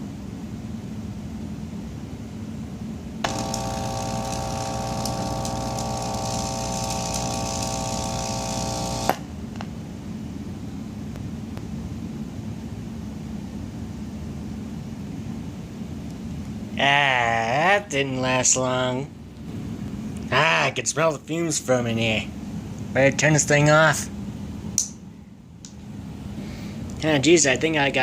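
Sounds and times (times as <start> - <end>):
steady background noise: 0.0 - 3.5, 9.1 - 28.0
speaker buzzing with mains hum: 1.6 - 16.8.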